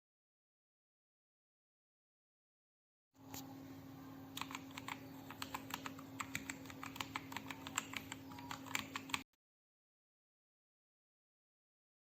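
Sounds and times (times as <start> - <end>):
mechanical keyboard keystroke clicks: 4.4 - 9.2.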